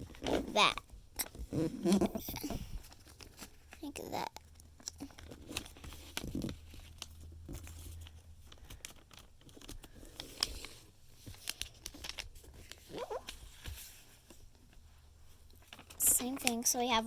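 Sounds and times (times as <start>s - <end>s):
paper rustling and crinkling: 0.0s - 17.0s
small crackles and taps: 2.3s - 14.0s, 15.4s - 16.8s.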